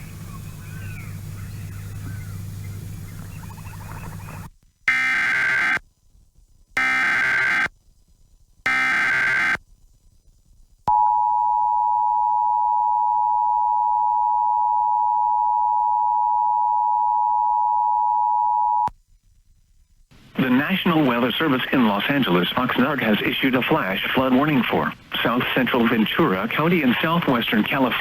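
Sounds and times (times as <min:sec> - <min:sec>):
screeching digital data bursts: 0:04.9 - 0:05.8, 0:06.8 - 0:07.7, 0:08.7 - 0:09.6.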